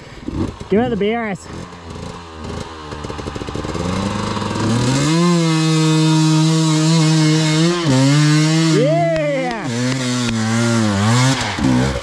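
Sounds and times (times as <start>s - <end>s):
dirt bike engine revving: 0.0s - 12.0s.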